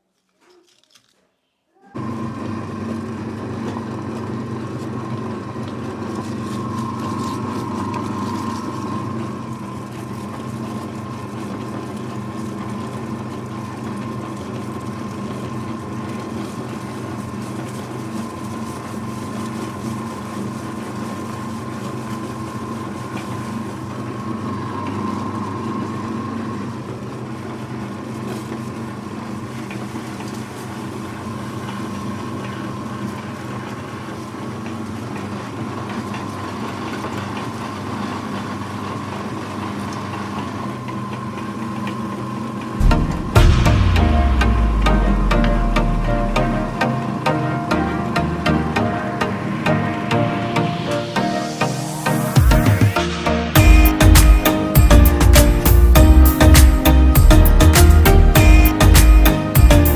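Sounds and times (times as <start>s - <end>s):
electric meat grinder humming: 2.0s - 28.6s.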